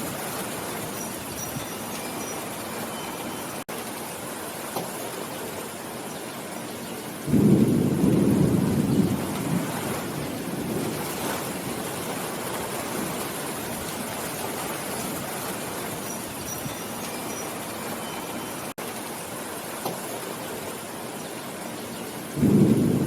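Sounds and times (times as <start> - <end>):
steady rainfall: 0.0 - 23.0
thunder rumble: 7.2 - 16.4, 22.3 - 23.0.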